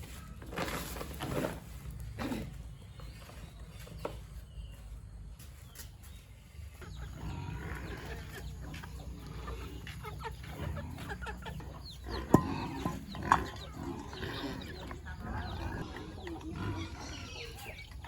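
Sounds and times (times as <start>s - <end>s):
farm animals clucking: 0.0s - 18.0s.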